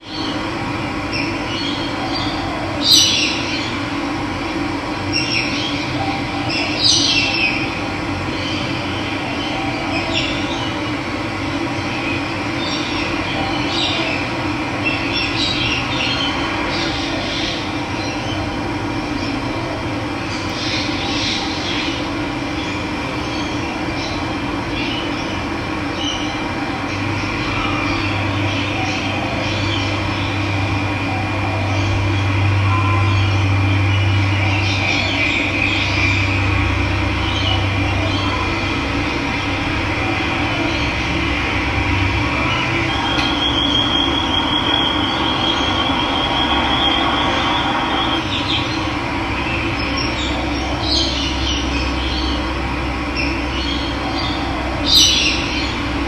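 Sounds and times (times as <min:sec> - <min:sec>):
birds chirping: 0:20.2 - 0:56.0.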